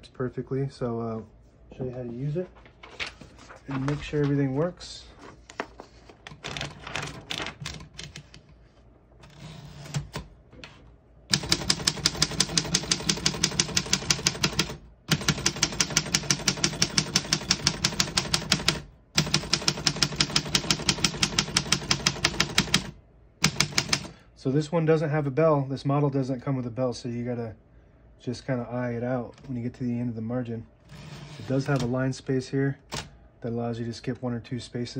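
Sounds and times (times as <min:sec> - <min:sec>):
typewriter typing: 0:06.3 - 0:08.4, 0:09.2 - 0:10.3, 0:11.3 - 0:24.2.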